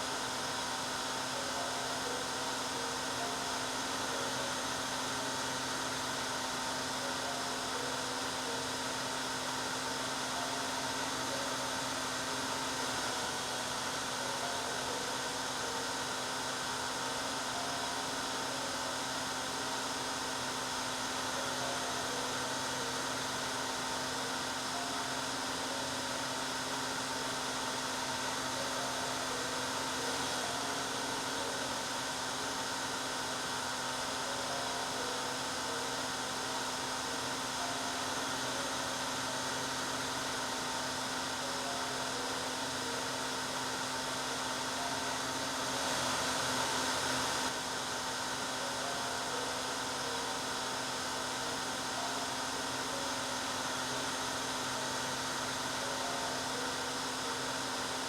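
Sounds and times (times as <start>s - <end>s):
hair dryer blowing air: 0.0s - 58.0s.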